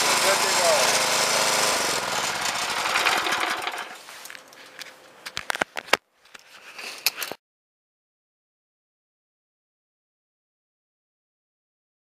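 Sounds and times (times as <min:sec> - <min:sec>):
small engine winding down: 0:00.0 - 0:04.0.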